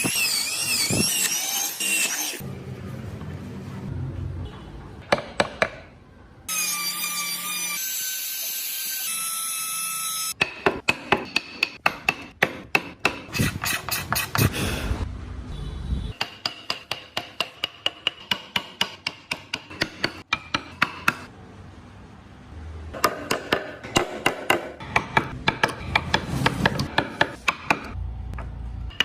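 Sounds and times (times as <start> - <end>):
hammer striking carving tool: 5.1 - 5.8, 10.4 - 14.5, 16.2 - 21.3, 23.0 - 28.0.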